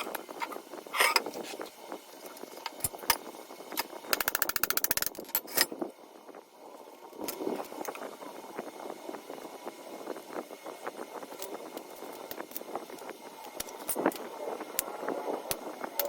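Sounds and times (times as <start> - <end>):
ratchet wrench clicking: 4.1 - 5.6.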